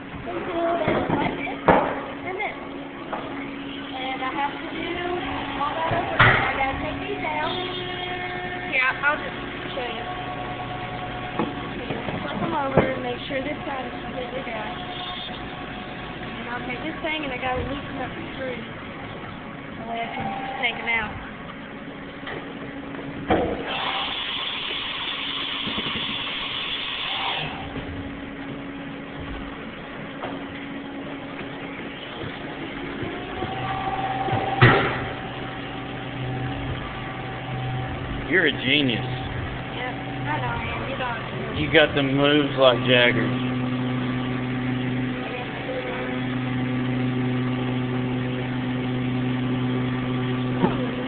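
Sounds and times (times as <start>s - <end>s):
steady machine hum: 0.0s - 51.0s
air blow gun hissing: 23.6s - 27.5s.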